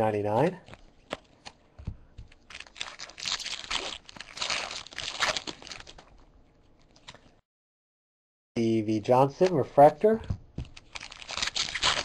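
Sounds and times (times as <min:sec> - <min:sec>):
wrapper tearing and crinkling: 0:02.4 - 0:06.2, 0:10.6 - 0:12.0.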